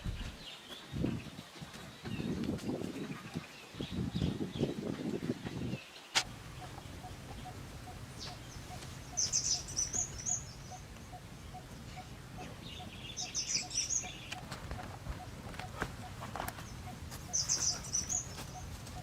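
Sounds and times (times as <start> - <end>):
steady background noise: 5.4 - 19.0
bird chirping rapidly: 6.2 - 14.5, 16.0 - 19.0.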